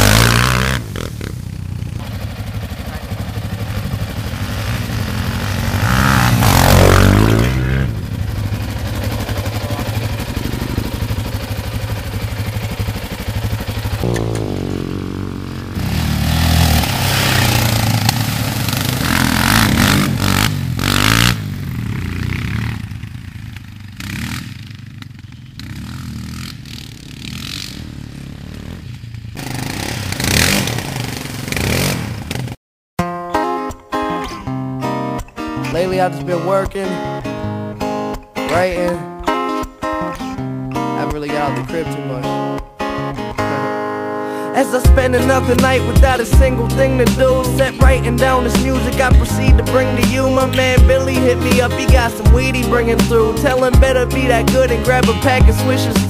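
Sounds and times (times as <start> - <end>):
engine clatter: 0.0 - 32.6
quad engine revving: 0.0 - 32.6, 43.4 - 56.0.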